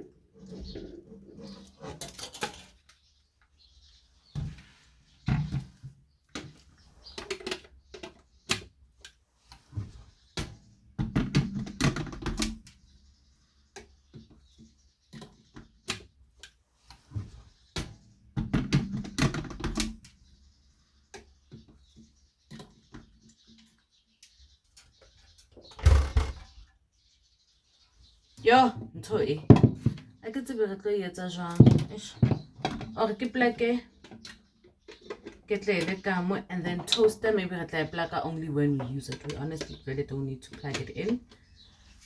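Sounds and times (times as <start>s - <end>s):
objects clicking and knocking: 0.0s - 3.0s, 5.3s - 12.8s, 17.8s - 20.2s, 33.9s - 36.0s.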